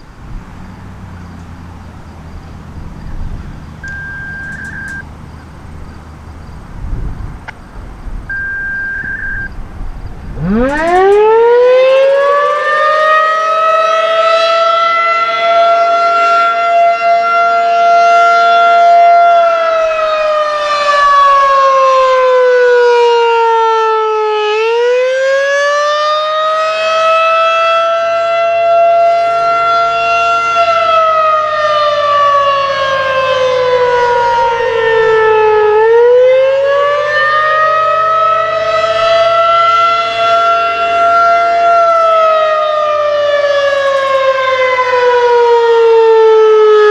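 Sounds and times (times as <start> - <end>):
warning siren wailing: 0.0 - 46.9.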